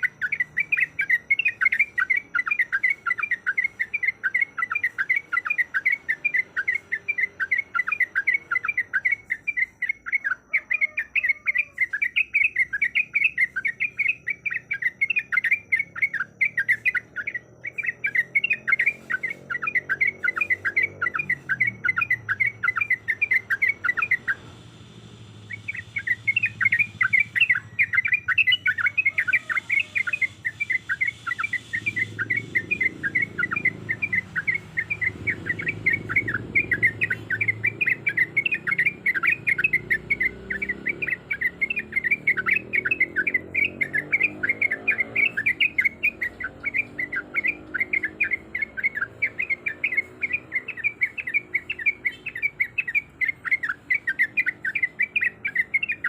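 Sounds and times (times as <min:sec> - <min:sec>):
bulbul chattering call: 0:00.0 - 0:56.0.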